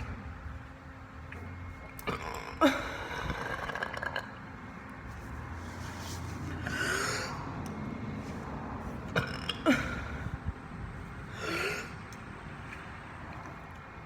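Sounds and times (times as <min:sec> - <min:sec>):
person burping: 0:09.2 - 0:10.1.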